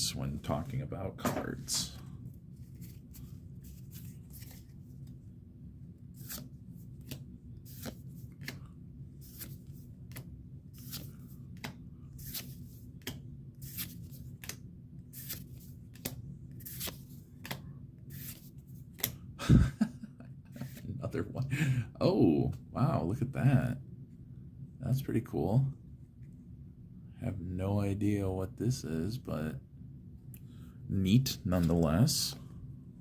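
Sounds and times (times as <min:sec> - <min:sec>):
faint low steady hum: 0:00.0 - 0:33.0
cards flicking: 0:06.2 - 0:08.6, 0:09.2 - 0:14.6, 0:18.2 - 0:19.2.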